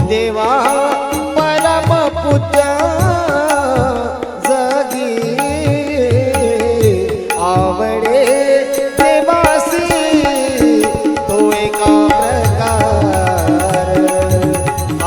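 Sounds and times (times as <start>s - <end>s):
sharp percussion strokes: 0.0s - 15.0s
hand drum beats: 9.0s - 15.0s.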